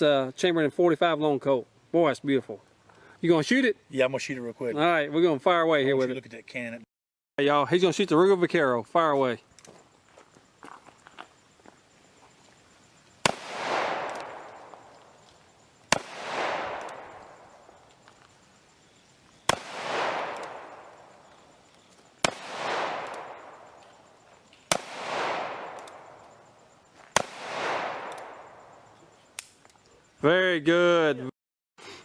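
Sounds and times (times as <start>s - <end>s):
revolver gunshots with echo: 13.2s - 14.9s, 15.9s - 17.7s, 19.5s - 21.2s, 22.2s - 23.8s, 24.7s - 26.2s, 27.2s - 28.7s.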